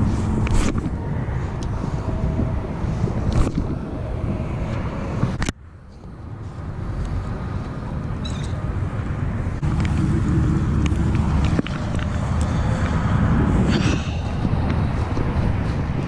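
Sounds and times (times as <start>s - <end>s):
highway traffic rumble: 0.0s - 16.0s.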